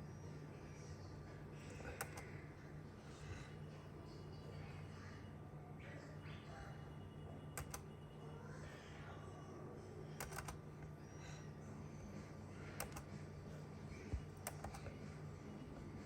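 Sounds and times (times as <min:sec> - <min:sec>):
faint steady low hum: 0:00.0 - 0:16.0
sharp computer clicks: 0:07.6 - 0:08.0, 0:10.2 - 0:10.6, 0:12.8 - 0:13.1, 0:14.4 - 0:14.9.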